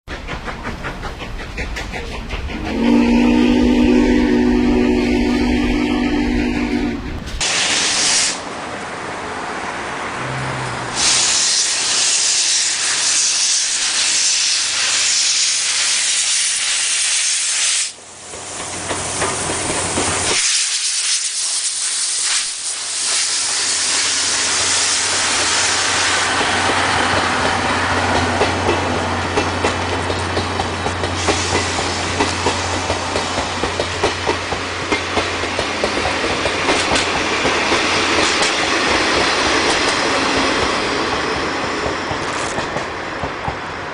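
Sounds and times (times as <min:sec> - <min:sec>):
locomotive exhaust chuffs: 0:00.1 - 0:08.2
train wheel clatter: 0:00.1 - 0:08.4, 0:11.0 - 0:43.9
steam hissing: 0:00.1 - 0:08.7, 0:10.9 - 0:43.9.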